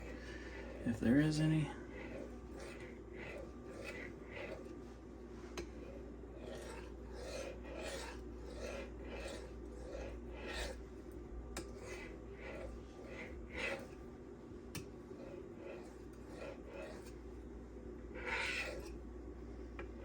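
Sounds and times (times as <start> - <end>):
knife scraping on sharpening stone: 2.0 - 4.6, 6.4 - 10.8, 18.2 - 19.0.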